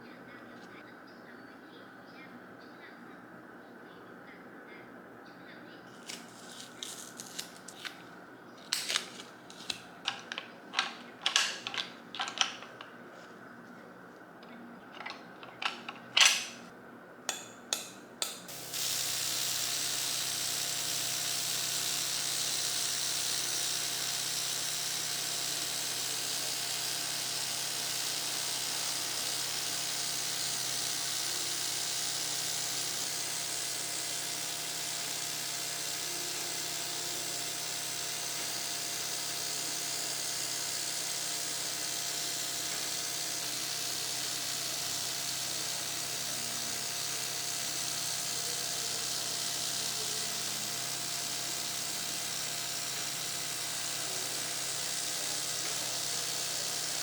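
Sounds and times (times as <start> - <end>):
sharp clicks: 15.0 - 16.6
small motor running with hiss: 18.5 - 57.0.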